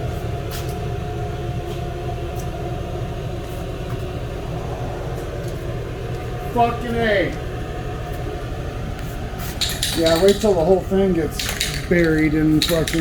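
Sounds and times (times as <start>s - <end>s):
low machine drone: 0.0s - 13.0s
steady tones: 4.2s - 9.0s.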